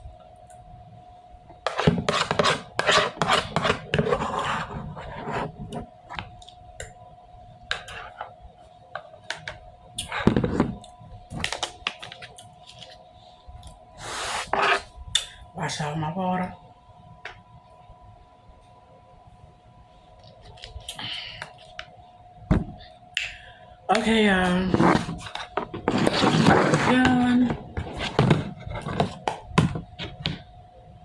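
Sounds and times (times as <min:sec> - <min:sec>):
faint steady hum: 0:00.0 - 0:31.0
utensil scraping a dish: 0:01.6 - 0:05.8, 0:14.0 - 0:14.9, 0:24.5 - 0:30.4.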